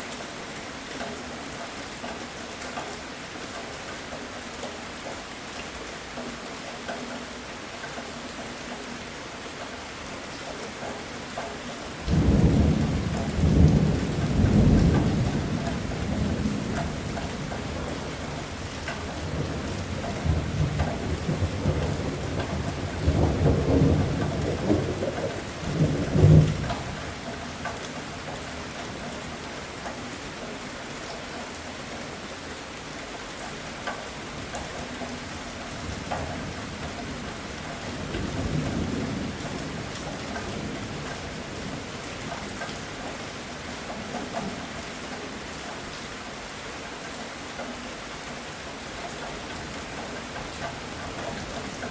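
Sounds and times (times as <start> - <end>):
heavy rain: 0.0 - 51.9
thunder rolling: 19.3 - 27.1.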